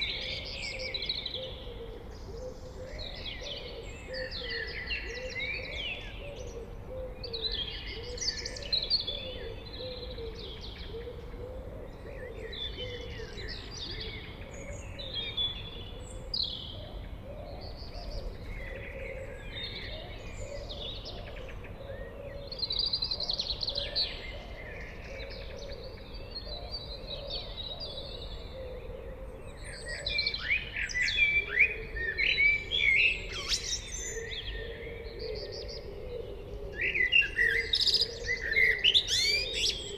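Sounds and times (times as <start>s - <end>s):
blackbird singing: 17.5s - 39.9s.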